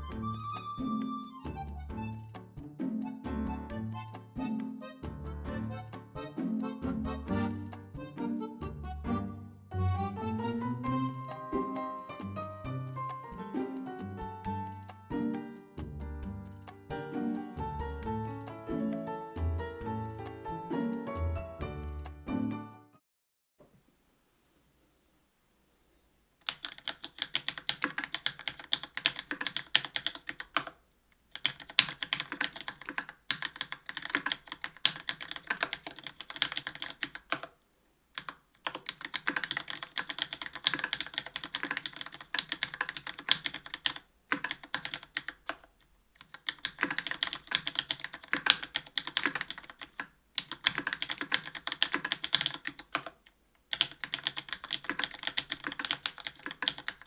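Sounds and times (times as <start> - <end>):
mechanical keyboard typing: 14.2 - 15.4, 17.8 - 20.4, 26.4 - 37.6, 38.2 - 57.0.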